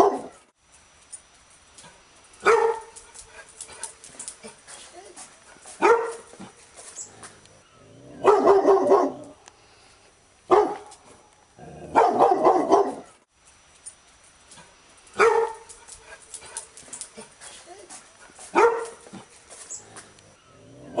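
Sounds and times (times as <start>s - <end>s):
dog barking: 0.0s - 0.4s, 2.4s - 3.0s, 5.6s - 6.5s, 8.2s - 9.4s, 10.5s - 10.9s, 11.9s - 13.2s, 15.2s - 15.7s, 18.5s - 19.2s.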